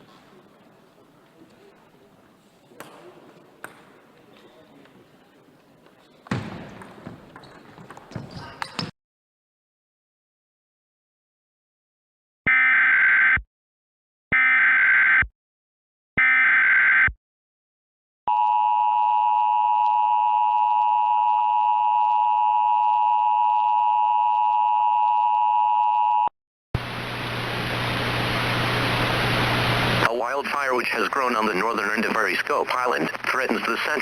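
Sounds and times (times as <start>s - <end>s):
steady hiss with low hum: 26.8s - 34.0s.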